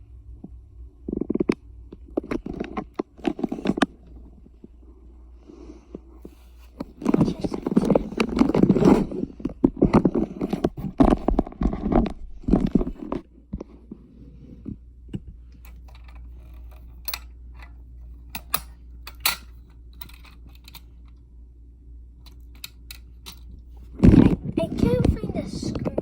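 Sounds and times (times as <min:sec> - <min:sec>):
low steady hum: 0:00.0 - 0:26.0
rustling handling noise: 0:06.0 - 0:14.0.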